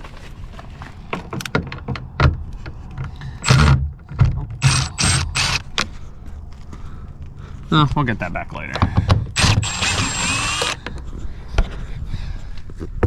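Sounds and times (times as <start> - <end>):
small power tool whirring: 4.6 - 5.7, 9.4 - 10.8.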